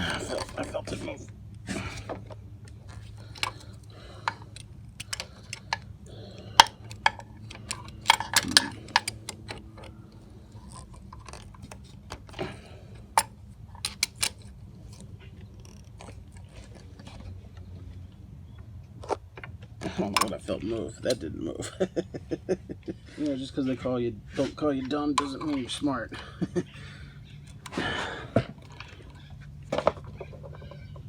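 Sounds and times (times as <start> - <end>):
hand tool clinking on metal: 3.2 - 10.0.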